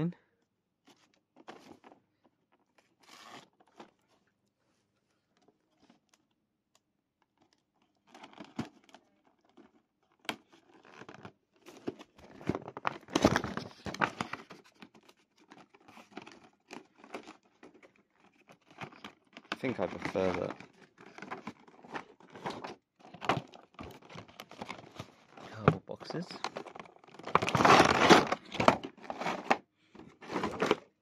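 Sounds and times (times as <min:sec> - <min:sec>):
packaging rustling: 0:07.4 - 0:31.0
packaging tearing and crinkling: 0:26.2 - 0:29.6.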